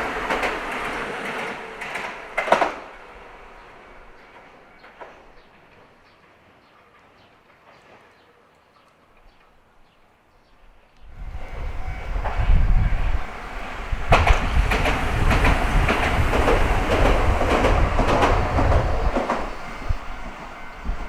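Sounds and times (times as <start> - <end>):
train wheels clacking over rail joints: 0.0 - 3.0, 12.2 - 21.0
electric train rumbling past: 0.0 - 8.1, 10.8 - 21.0.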